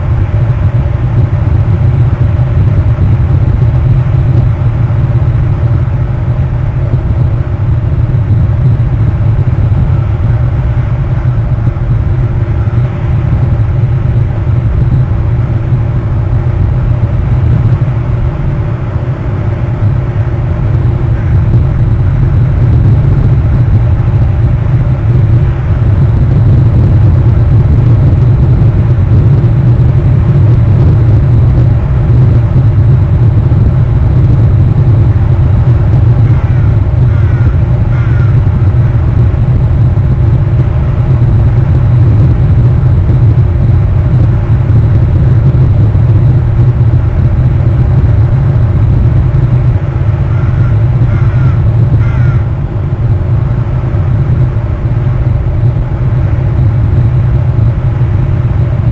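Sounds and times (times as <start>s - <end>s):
steady low rumble: 0.0s - 58.9s
short bird calls: 50.4s - 52.4s.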